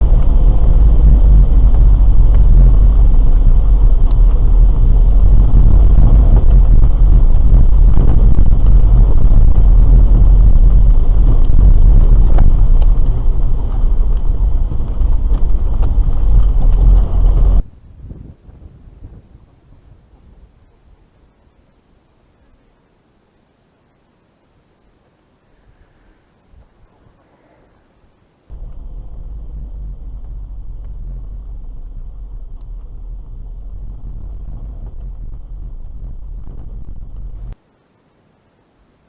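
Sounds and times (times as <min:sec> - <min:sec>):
car engine and road rumble: 0:00.0 - 0:39.0.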